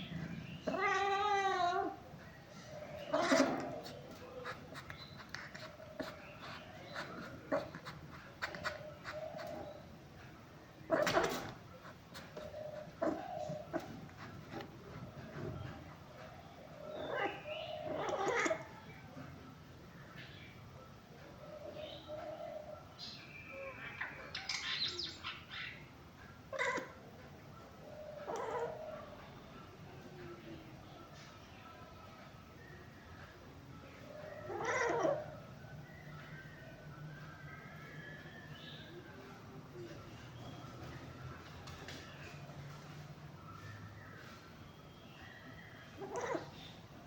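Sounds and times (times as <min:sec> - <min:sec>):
cat calling: 0:00.6 - 0:02.0, 0:03.0 - 0:09.6, 0:17.0 - 0:18.8, 0:26.5 - 0:27.0, 0:28.2 - 0:28.8, 0:34.4 - 0:35.4, 0:46.0 - 0:46.6
pet yowling: 0:03.0 - 0:07.9, 0:12.8 - 0:14.3, 0:17.0 - 0:18.8, 0:26.5 - 0:27.0, 0:28.2 - 0:28.8, 0:34.3 - 0:35.4, 0:46.0 - 0:46.6
pet panting and whimpering: 0:03.0 - 0:10.3.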